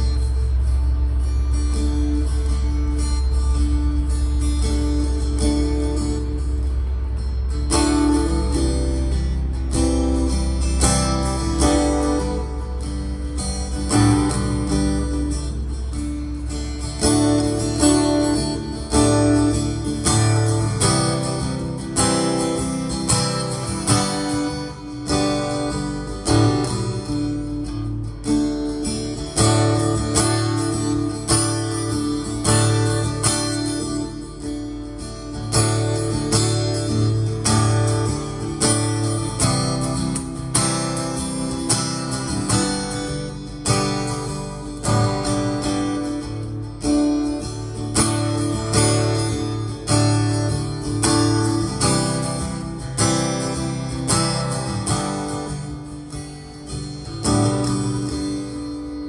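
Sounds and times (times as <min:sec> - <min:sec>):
guitar strumming chords: 0:00.0 - 0:59.0.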